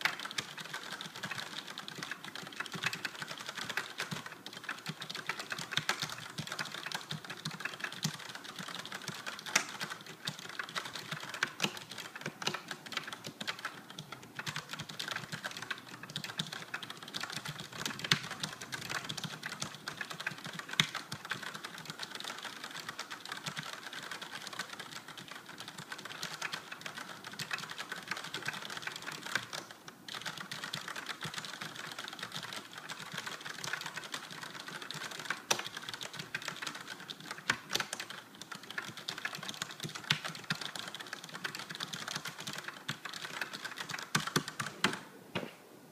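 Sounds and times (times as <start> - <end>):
mechanical keyboard typing: 0.0 - 45.0.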